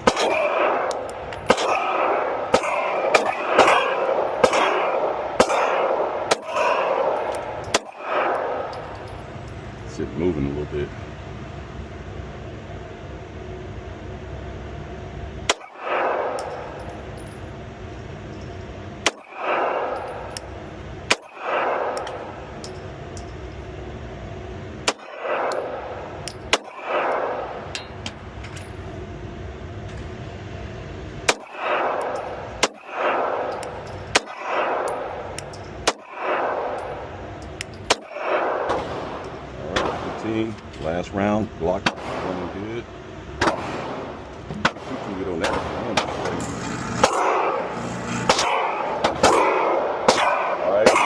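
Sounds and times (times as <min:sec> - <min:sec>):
pistol shots with ringing echo: 0:00.0 - 0:09.1, 0:15.5 - 0:17.5, 0:19.0 - 0:22.7, 0:24.8 - 0:28.0, 0:31.2 - 0:37.2, 0:37.8 - 0:40.5, 0:41.8 - 0:42.5, 0:43.4 - 0:46.3, 0:48.3 - 0:51.0.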